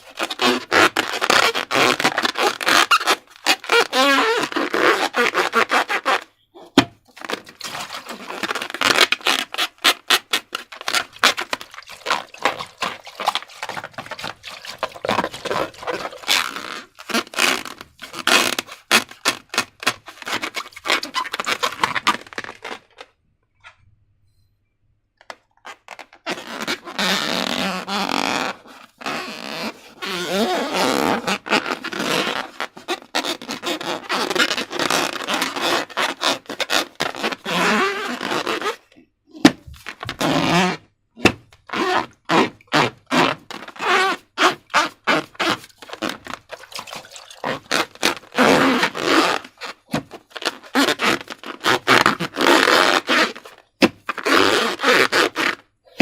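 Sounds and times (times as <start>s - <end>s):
sputtering slime squelch: 10.8s - 17.0s, 45.4s - 48.3s.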